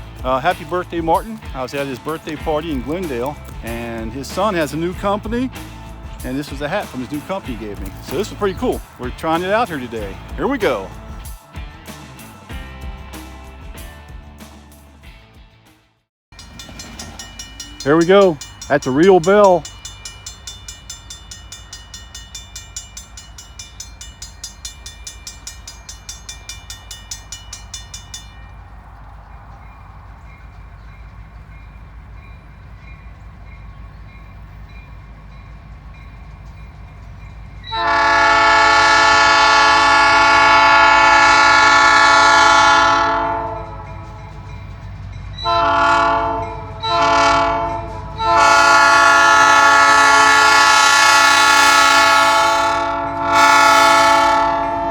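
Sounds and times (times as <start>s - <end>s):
locomotive bell ringing: 0.0s - 11.4s, 16.3s - 54.9s
train low rumble: 0.0s - 15.7s, 16.3s - 54.9s
locomotive air horn blasts: 37.7s - 44.3s, 45.4s - 54.9s.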